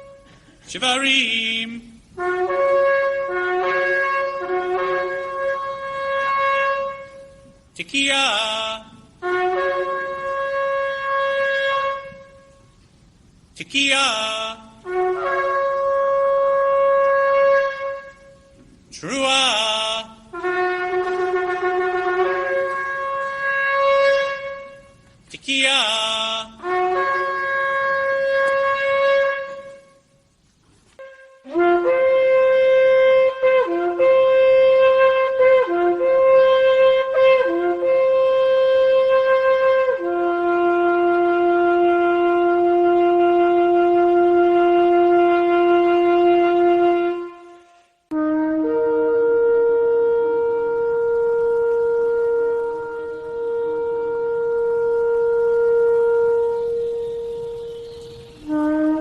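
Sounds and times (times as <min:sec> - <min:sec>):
shofar blasts: 0:00.0 - 0:00.6, 0:02.0 - 0:12.8, 0:14.1 - 0:18.8, 0:19.4 - 0:25.2, 0:25.9 - 0:30.3, 0:30.9 - 0:59.0.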